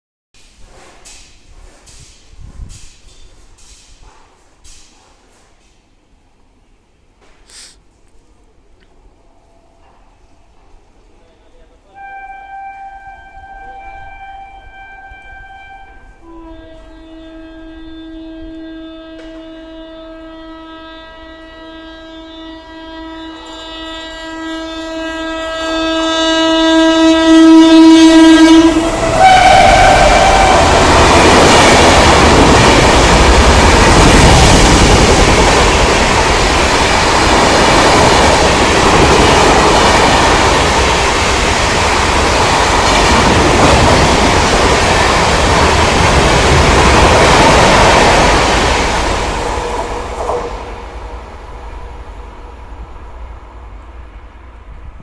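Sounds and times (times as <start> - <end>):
train wheel and rail noise: 0.4 - 55.0
train horn blast: 11.8 - 31.3.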